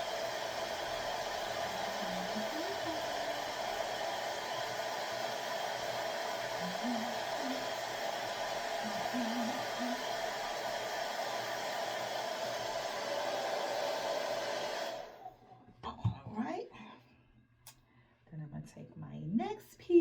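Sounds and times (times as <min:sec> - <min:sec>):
hair dryer blowing: 0:00.0 - 0:15.4.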